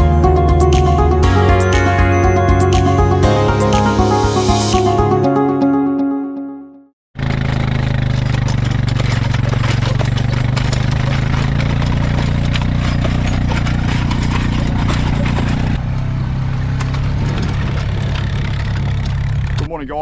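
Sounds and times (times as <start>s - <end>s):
farm vehicle engine running: 0.0s - 4.8s, 7.2s - 20.0s
driving noise: 7.2s - 20.0s.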